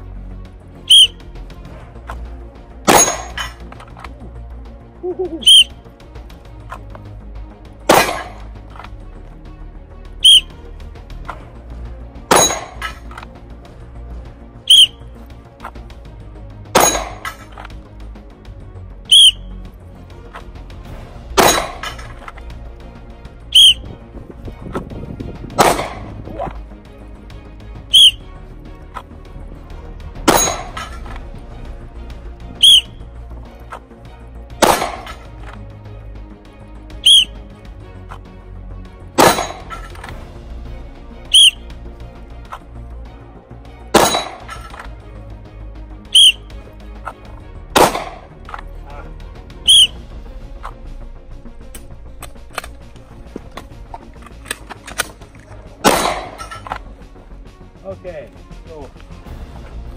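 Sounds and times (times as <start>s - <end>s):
short whistle blast: 0.9s - 1.2s, 5.4s - 5.8s, 10.2s - 10.6s, 14.7s - 15.0s, 19.1s - 19.6s, 23.5s - 23.9s, 27.9s - 28.2s, 32.6s - 33.0s, 37.0s - 37.4s, 41.3s - 41.7s, 46.1s - 46.5s, 49.6s - 50.0s
handgun shot: 2.9s - 3.4s, 7.9s - 8.4s, 16.8s - 17.4s, 21.4s - 22.0s, 25.6s - 26.2s, 34.6s - 35.2s, 39.2s - 39.8s, 44.0s - 44.5s, 47.8s - 48.3s, 55.8s - 56.7s.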